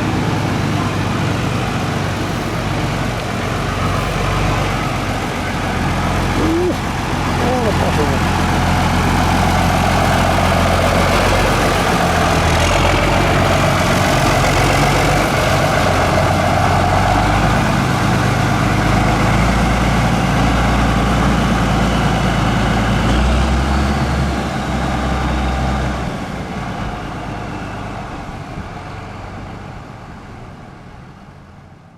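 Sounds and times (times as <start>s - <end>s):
tractor diesel engine running: 0.0s - 31.9s.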